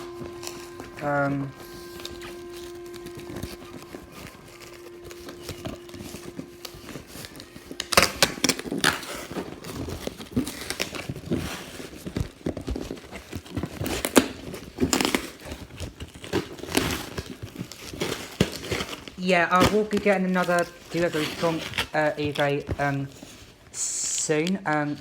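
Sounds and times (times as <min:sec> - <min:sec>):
faint low hum: 0:00.0 - 0:12.1
packaging crinkling and tearing: 0:03.8 - 0:23.6.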